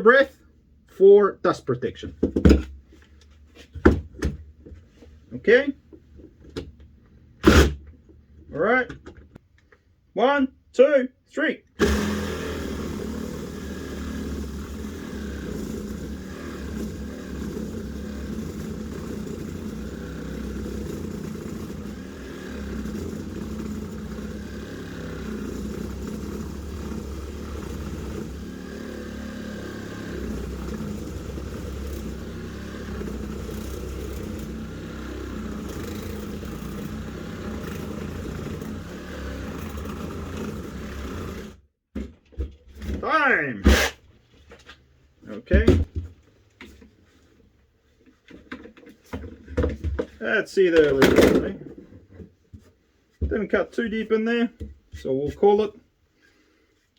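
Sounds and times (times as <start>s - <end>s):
reciprocating saw cutting timber: 11.8s - 41.6s, 43.6s - 44.0s.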